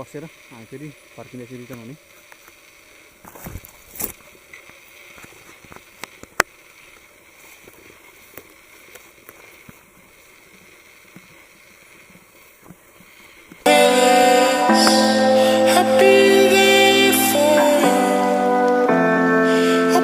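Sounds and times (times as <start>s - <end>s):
faint steady hiss: 0.0s - 20.0s
footsteps rustling and crunching: 7.0s - 10.2s.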